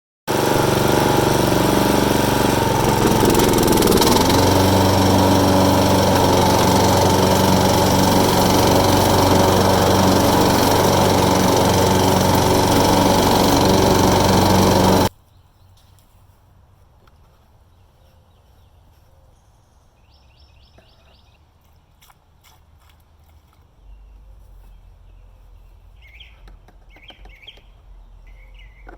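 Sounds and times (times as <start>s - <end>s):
lawn mower engine running: 0.3s - 15.1s.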